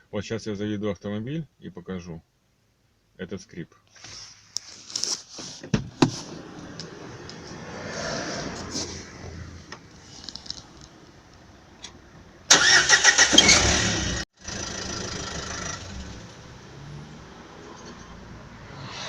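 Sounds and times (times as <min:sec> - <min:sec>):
diesel engine cranking and starting: 0:11.8 - 0:16.7
exhaust squeak: 0:12.5 - 0:16.3.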